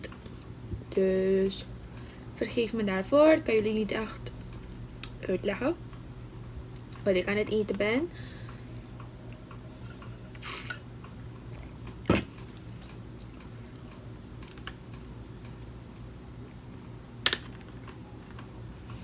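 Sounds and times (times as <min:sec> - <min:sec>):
low steady hum: 0:00.0 - 0:19.0
chewing food: 0:11.0 - 0:16.1, 0:17.5 - 0:19.0.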